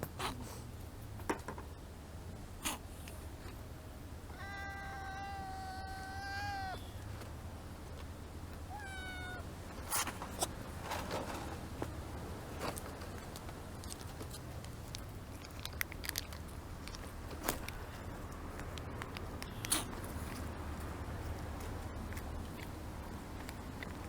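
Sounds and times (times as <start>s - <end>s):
kitten meowing: 4.3s - 7.0s, 8.7s - 9.5s.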